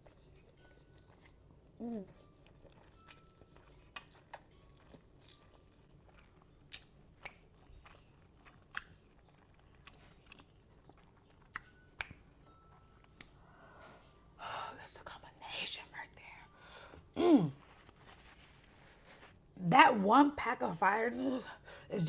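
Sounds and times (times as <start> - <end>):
chewing food: 0.0 - 13.6.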